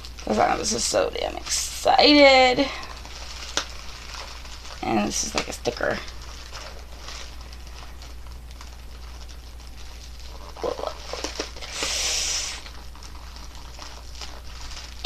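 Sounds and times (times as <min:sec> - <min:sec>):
paper crinkling and scratching: 0:00.0 - 0:15.0
sticker peeling hiss: 0:06.6 - 0:15.0.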